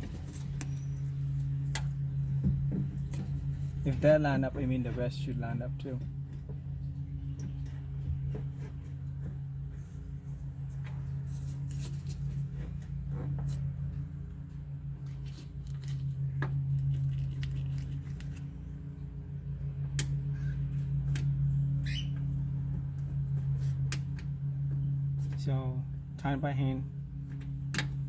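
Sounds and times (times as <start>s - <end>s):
steady low hum: 0.0s - 28.0s
rising squeak: 21.8s - 22.3s.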